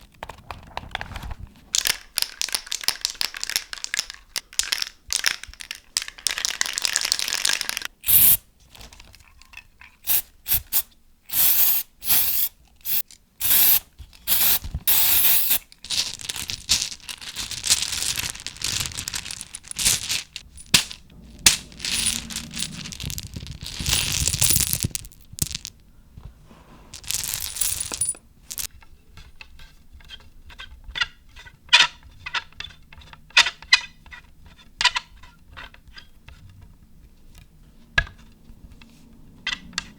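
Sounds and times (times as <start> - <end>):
small hard objects clinking: 10.1 - 25.8, 26.9 - 28.7.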